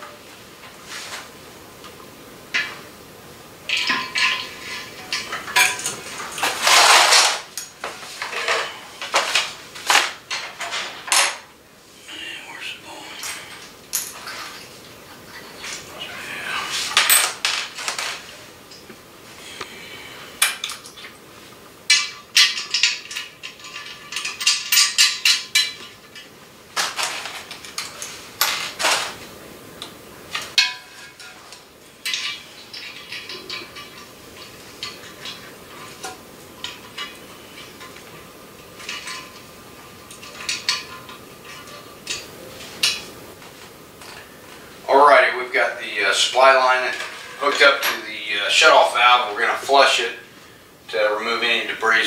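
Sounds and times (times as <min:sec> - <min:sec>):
metal tools clinking: 0:03.7 - 0:11.4, 0:21.9 - 0:29.2, 0:30.6 - 0:43.1.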